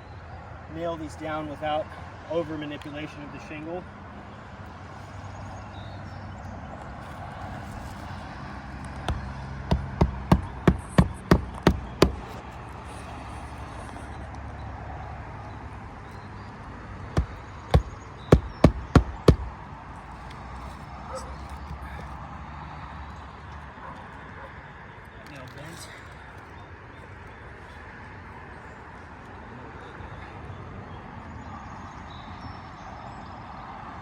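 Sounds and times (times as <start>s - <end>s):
hammer striking nails: 8.8s - 12.5s, 17.2s - 19.6s.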